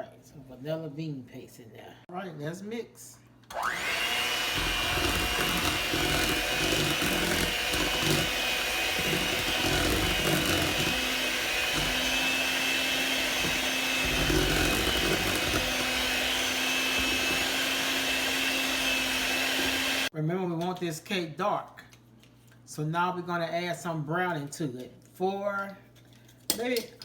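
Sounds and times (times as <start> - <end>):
electric mixer whining: 3.5 - 20.1
batter churning: 3.8 - 20.1.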